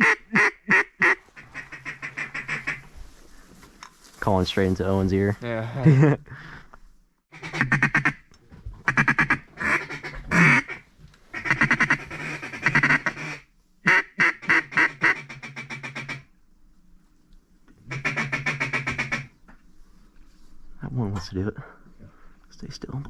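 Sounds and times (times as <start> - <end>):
duck call quacks: 0.0 - 2.8, 7.3 - 8.2, 8.9 - 16.3, 17.9 - 19.3.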